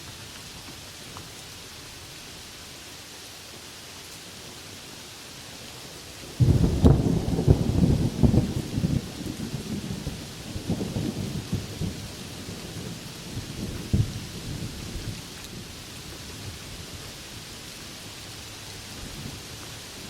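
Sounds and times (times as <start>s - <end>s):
steady rain: 0.0s - 20.0s
thunder rumbling: 6.4s - 15.7s.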